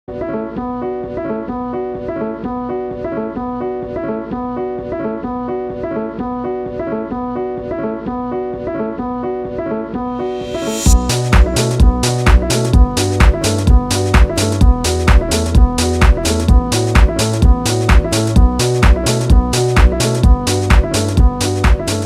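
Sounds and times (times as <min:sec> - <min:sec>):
repeating melodic music riff: 0:10.2 - 0:22.0.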